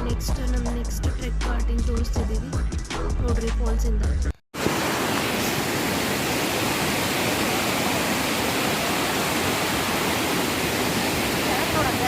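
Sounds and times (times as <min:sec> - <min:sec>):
waterfall rushing: 0:04.6 - 0:12.0.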